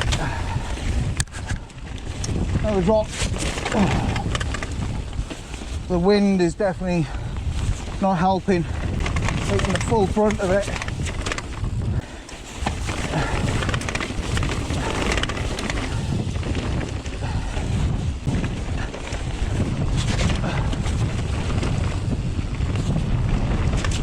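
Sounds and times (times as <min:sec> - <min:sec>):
bike tyres rattling on rocky trail: 0:00.0 - 0:24.0
wind buffeting microphone: 0:00.0 - 0:24.0.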